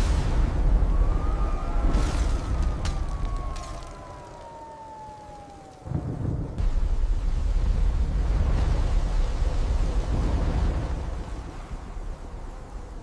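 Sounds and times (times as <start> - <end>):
thunder rumble: 0.0 - 13.0
siren-like falling tone: 0.8 - 6.6.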